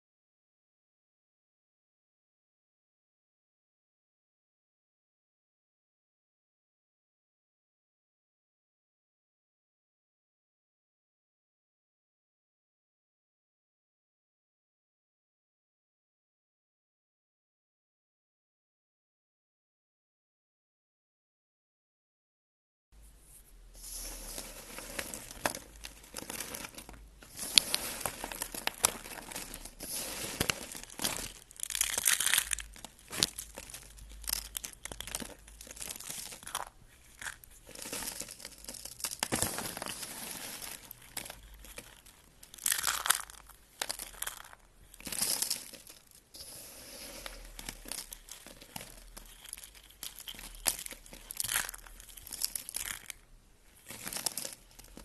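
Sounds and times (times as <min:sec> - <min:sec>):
material crunching and crackling: 0:23.3 - 0:55.0.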